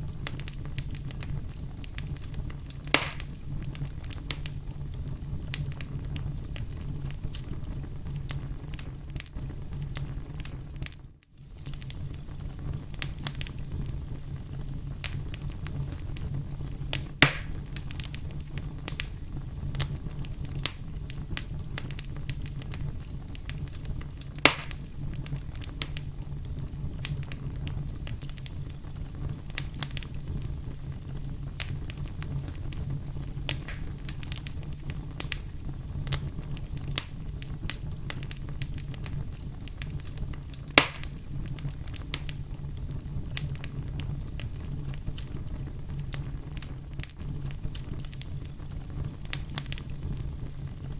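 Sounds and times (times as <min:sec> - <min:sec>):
campfire crackling: 0:00.0 - 0:50.9
loud fire pops: 0:00.0 - 0:50.9.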